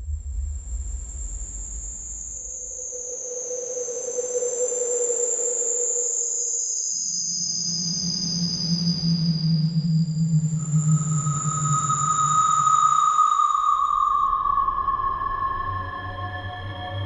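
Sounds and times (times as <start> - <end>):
high sustained tones: 8.5 - 17.0
low drone: 8.6 - 17.0.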